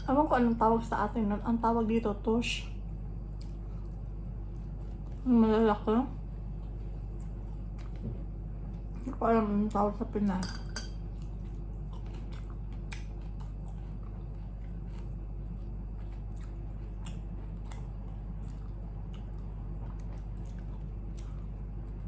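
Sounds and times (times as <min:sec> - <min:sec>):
person chewing food: 0:03.2 - 0:05.2, 0:06.5 - 0:08.0, 0:11.0 - 0:22.0.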